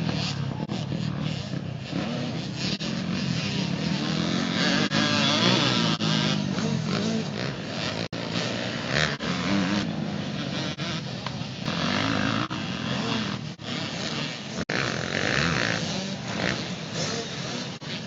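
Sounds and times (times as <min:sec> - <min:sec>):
dirt bike engines revving: 0:00.0 - 0:18.0.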